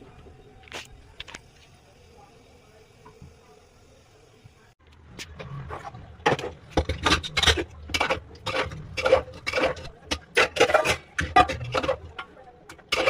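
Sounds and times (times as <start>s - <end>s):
spoon scraping a pan: 5.4s - 13.0s.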